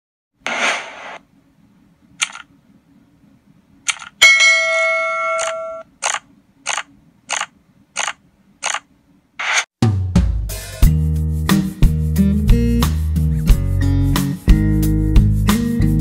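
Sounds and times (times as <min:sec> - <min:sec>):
short sharp hits: 0:00.4 - 0:01.2
short clicks: 0:02.2 - 0:02.5, 0:03.9 - 0:04.2
bright metallic ding: 0:04.2 - 0:05.8.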